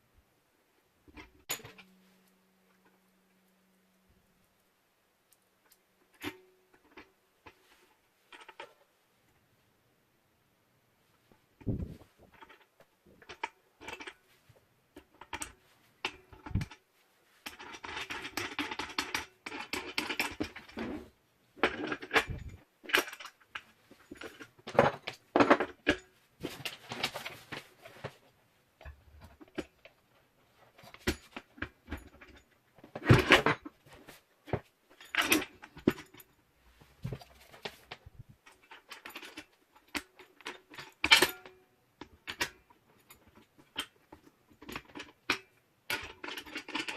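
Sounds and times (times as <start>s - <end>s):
rustling: 26.0s - 28.4s.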